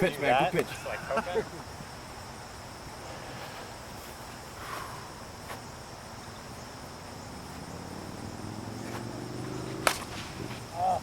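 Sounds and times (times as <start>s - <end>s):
insects chirring: 0.0s - 11.0s
sharp crack: 8.8s - 11.0s.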